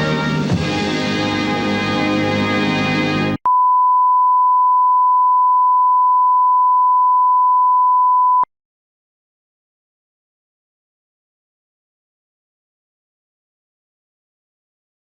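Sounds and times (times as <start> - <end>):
music: 0.0 - 3.4.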